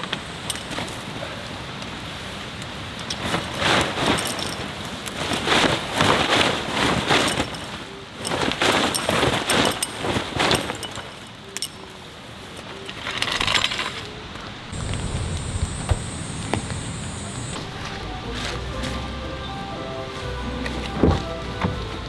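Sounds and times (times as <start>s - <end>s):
heavy rain pattering: 14.2s - 22.0s.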